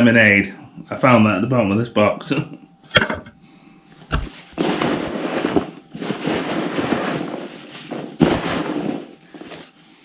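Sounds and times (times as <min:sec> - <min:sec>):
cardboard box rustling: 0:04.2 - 0:09.7.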